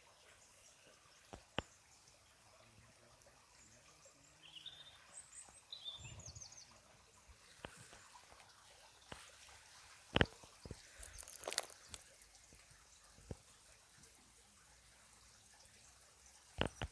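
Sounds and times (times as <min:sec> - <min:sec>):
faint outdoor background noise: 0:00.0 - 0:16.9
small birds chirping: 0:00.1 - 0:13.8, 0:15.2 - 0:16.9.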